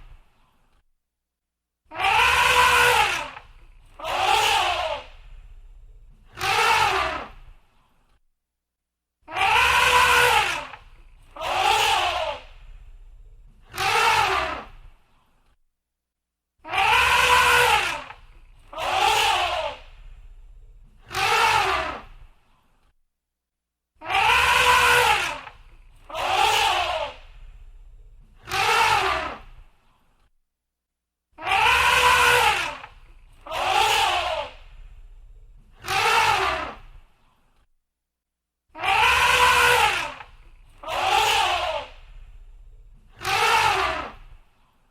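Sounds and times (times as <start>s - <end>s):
elephant trumpeting: 2.0s - 7.3s, 9.3s - 14.6s, 16.7s - 22.0s, 24.1s - 29.4s, 31.4s - 36.8s, 38.8s - 44.3s
low rumble: 5.1s - 6.3s, 12.6s - 13.6s, 19.9s - 21.0s, 27.3s - 28.4s, 34.6s - 35.8s, 42.0s - 43.1s.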